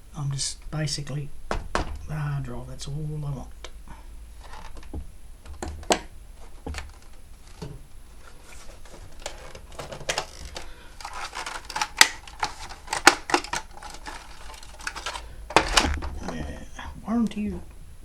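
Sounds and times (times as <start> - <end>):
plastic and metal parts clicking: 8.8 - 16.5.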